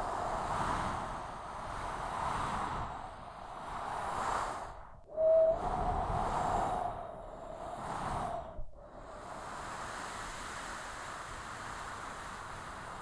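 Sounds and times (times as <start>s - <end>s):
strong wind gusts: 0.0s - 11.1s
wind whistle rising in pitch: 5.1s - 8.7s.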